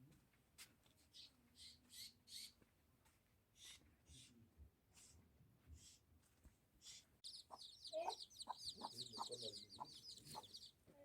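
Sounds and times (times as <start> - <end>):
chickens clucking: 7.3 - 10.7
high-pitched chirping: 7.3 - 10.7.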